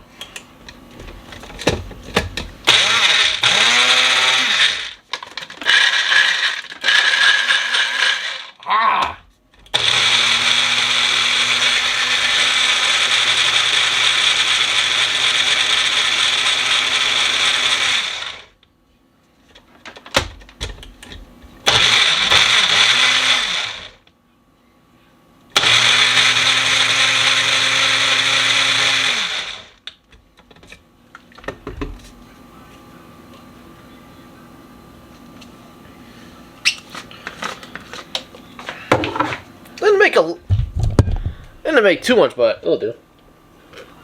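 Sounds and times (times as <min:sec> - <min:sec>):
blender running: 0:02.6 - 0:08.6, 0:09.7 - 0:18.6, 0:21.6 - 0:24.0, 0:25.5 - 0:29.8.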